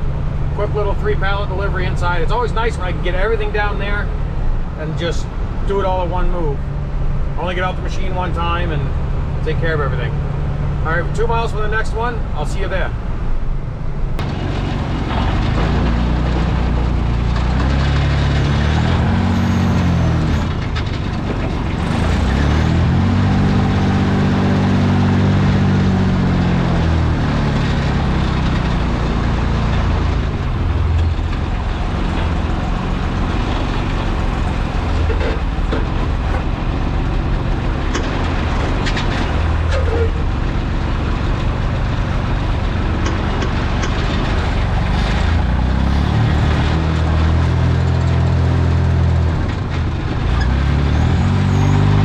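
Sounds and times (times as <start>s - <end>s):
truck engine pulling away: 0.0s - 52.0s.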